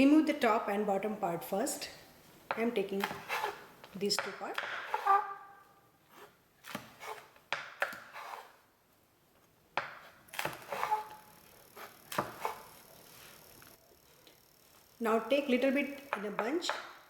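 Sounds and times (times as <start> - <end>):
knife chopping on cutting board: 11.8 - 12.6.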